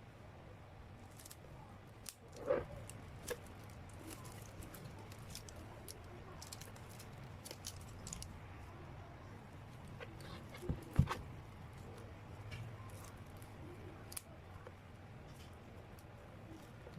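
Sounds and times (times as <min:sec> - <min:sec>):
album packaging clicks and rustles: 0:01.0 - 0:08.3.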